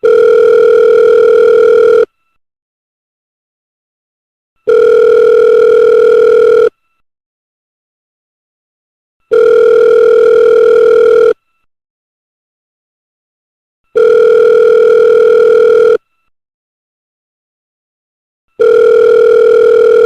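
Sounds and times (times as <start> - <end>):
telephone ringing: 0.0 - 2.1, 4.7 - 6.7, 9.3 - 11.4, 14.0 - 16.0, 18.6 - 20.0.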